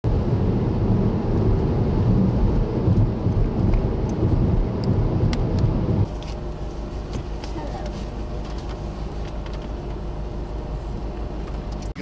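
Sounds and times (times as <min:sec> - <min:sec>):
thunder rumbling: 0:00.1 - 0:06.1.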